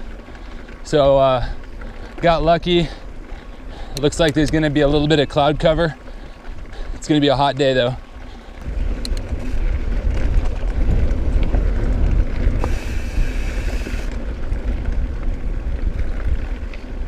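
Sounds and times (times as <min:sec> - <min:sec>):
bike rolling over dirt trail: 0:00.0 - 0:17.0
wind buffeting microphone: 0:08.2 - 0:17.0.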